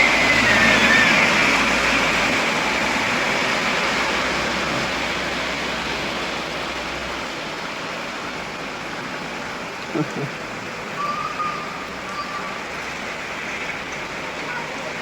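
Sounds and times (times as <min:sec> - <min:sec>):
steady rain: 0:00.0 - 0:15.0.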